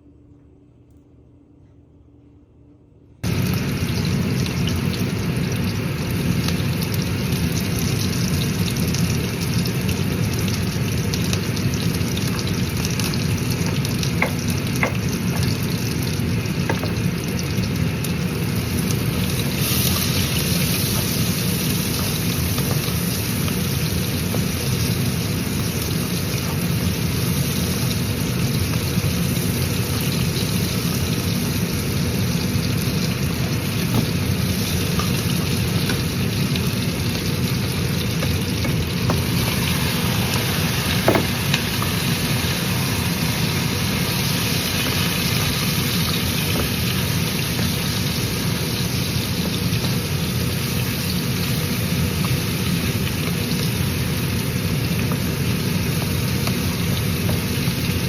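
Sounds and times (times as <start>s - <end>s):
ribs sizzling in a pan: 3.3s - 58.0s.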